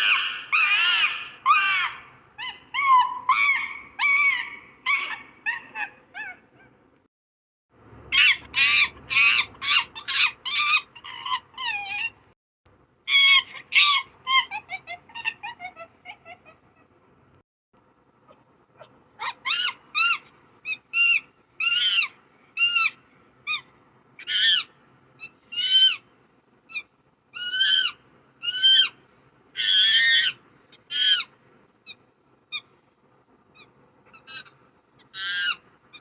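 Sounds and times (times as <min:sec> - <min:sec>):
chimpanzee hooting and screaming: 0:00.0 - 0:06.8, 0:08.1 - 0:12.2, 0:13.1 - 0:16.9, 0:18.8 - 0:23.6, 0:24.2 - 0:26.0, 0:27.4 - 0:29.0, 0:29.6 - 0:31.3, 0:33.6 - 0:36.0.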